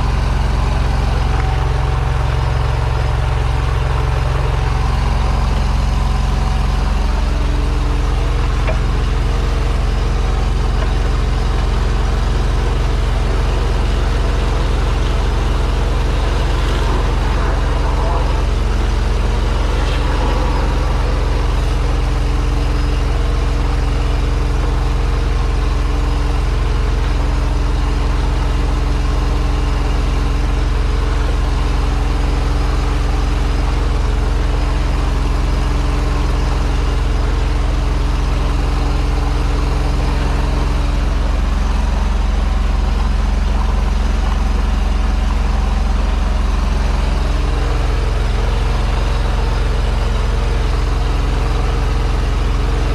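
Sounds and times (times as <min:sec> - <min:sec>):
sewer jetter engine and pump drone: 0:00.0 - 0:52.9
water jet hiss: 0:12.6 - 0:23.1.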